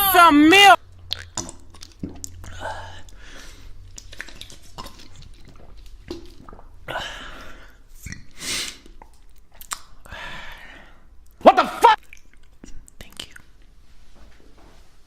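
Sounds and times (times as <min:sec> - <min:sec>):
wet mouth eating noises: 0:00.8 - 0:06.9, 0:07.7 - 0:10.1, 0:11.2 - 0:13.7.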